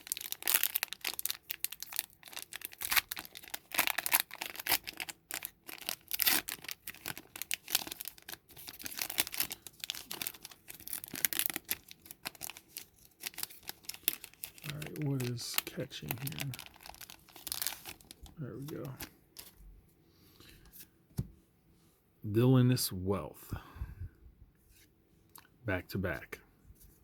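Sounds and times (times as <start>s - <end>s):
foil wrapper crinkling and tearing: 0.0s - 19.6s.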